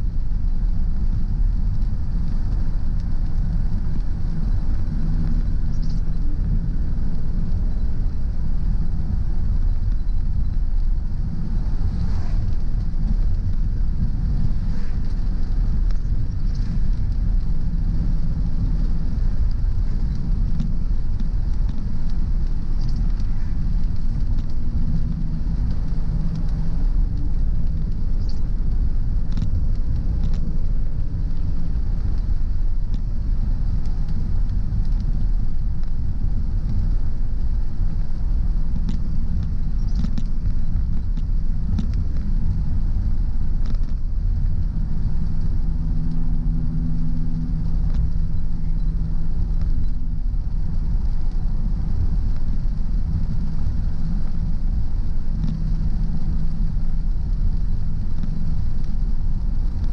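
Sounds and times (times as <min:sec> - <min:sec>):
car engine and tyres rumbling: 0:00.0 - 0:59.9.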